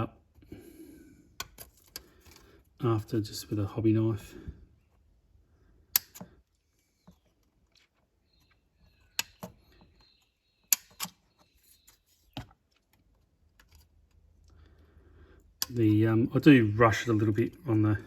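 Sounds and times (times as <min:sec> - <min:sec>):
snips cutting plastic: 0:06.0 - 0:06.4, 0:10.7 - 0:11.2.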